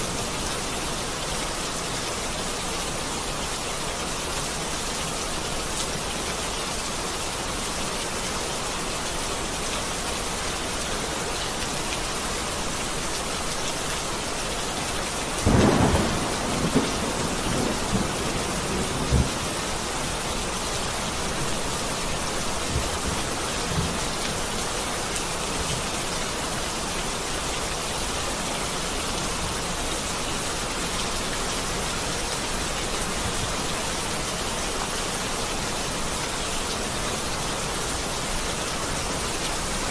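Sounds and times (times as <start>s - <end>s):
heavy rain: 0.0s - 39.9s
thunder clap and rumbles: 15.5s - 19.6s.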